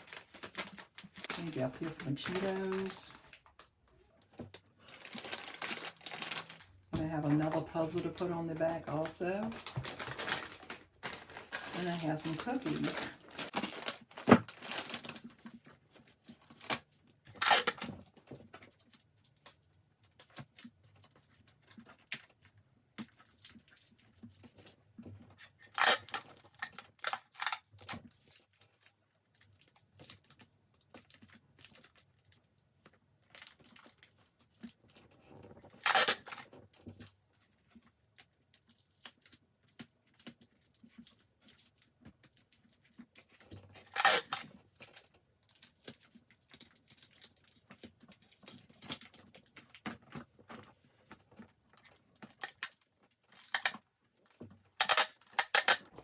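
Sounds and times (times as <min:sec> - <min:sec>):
packaging tearing: 0:00.0 - 0:03.7, 0:04.8 - 0:15.3, 0:17.4 - 0:17.9, 0:25.7 - 0:27.6, 0:35.8 - 0:36.4, 0:43.8 - 0:44.9, 0:54.8 - 0:55.9
plastic packaging crinkling: 0:00.0 - 0:18.0, 0:25.7 - 0:30.4, 0:35.6 - 0:36.5, 0:40.0 - 0:56.0.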